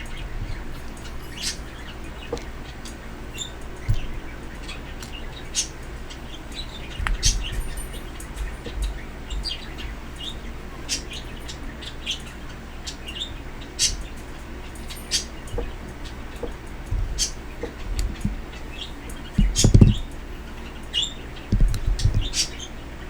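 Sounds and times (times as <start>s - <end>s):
birds chirping: 0.0s - 23.0s
low thumps: 16.8s - 18.5s, 19.4s - 20.2s, 21.5s - 22.4s.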